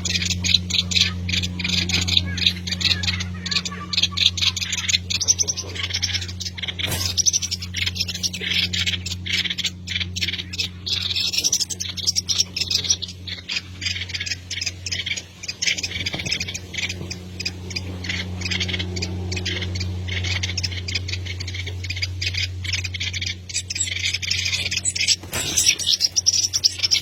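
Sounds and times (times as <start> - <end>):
birds cheeping and chirping: 0.0 - 27.0
steady low hum: 0.0 - 27.0.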